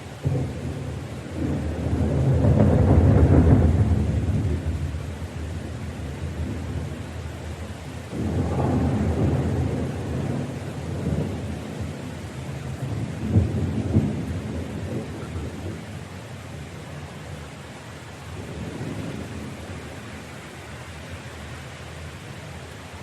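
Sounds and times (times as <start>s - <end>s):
steady rain: 0.0s - 23.0s
thunder rumbling: 0.2s - 7.1s, 8.1s - 16.0s
sharp thunder cracks: 1.4s - 4.7s, 8.1s - 11.4s.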